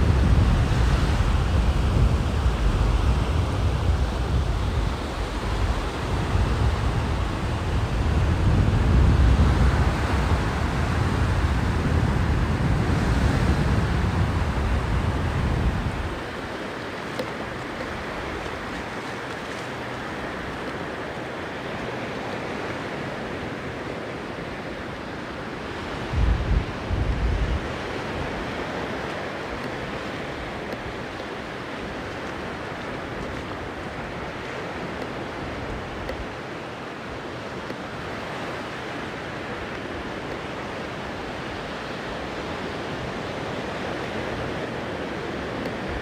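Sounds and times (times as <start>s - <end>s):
wind buffeting microphone: 0.0s - 21.0s, 25.6s - 36.5s
sea surf washing on beach: 0.0s - 46.0s.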